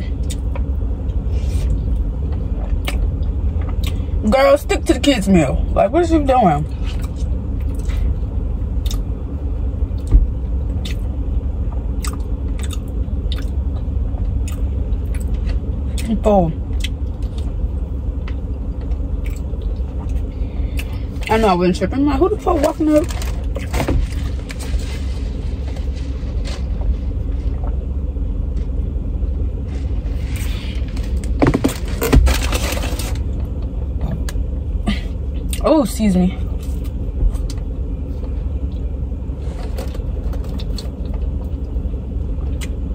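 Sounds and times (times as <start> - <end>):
car engine idling: 0.0 - 42.9
chewing and biting mouth sounds: 12.0 - 16.1.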